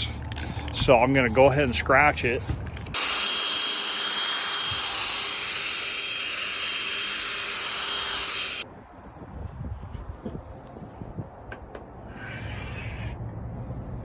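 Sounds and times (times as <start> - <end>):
small power tool whining: 2.9 - 8.6.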